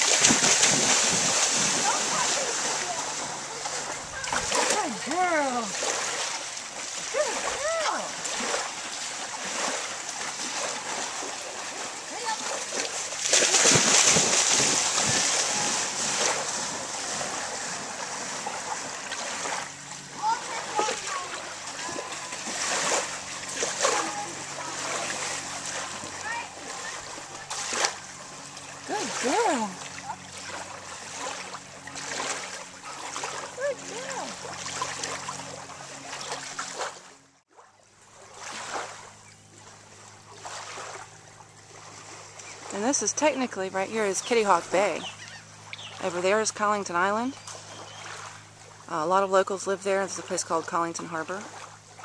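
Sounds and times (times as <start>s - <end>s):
dog splashing through water: 0.0s - 37.1s
small waves lapping on shore: 0.0s - 52.0s.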